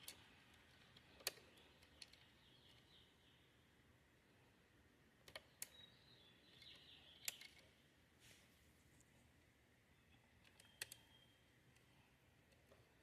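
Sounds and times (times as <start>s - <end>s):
small plastic clicks and taps: 0.0s - 2.9s, 5.2s - 5.9s, 6.5s - 7.8s, 10.4s - 11.1s.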